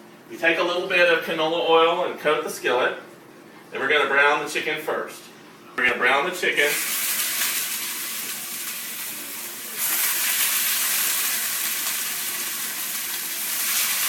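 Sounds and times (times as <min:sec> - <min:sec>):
chicken sizzling in oil: 0:06.6 - 0:14.0.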